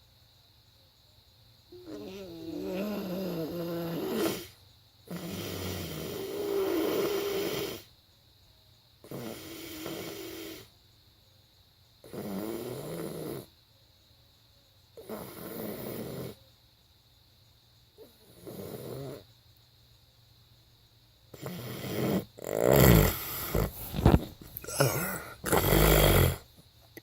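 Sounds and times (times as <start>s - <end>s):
person snoring: 1.8s - 4.5s, 21.4s - 26.5s.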